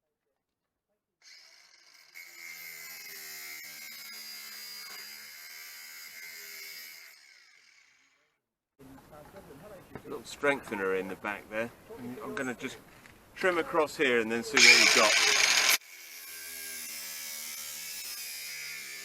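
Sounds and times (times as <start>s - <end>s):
power tool cutting sheet metal: 1.2s - 8.2s, 14.6s - 19.0s.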